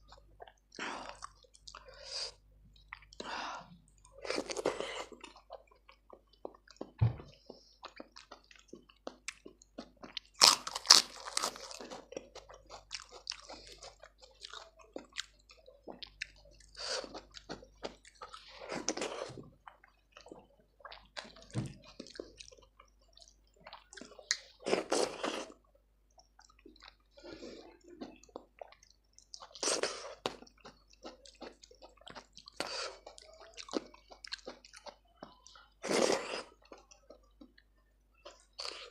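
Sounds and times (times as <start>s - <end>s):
chewing with wet clicks: 0.0s - 3.3s, 3.9s - 38.9s
crunchy bites: 10.3s - 12.0s.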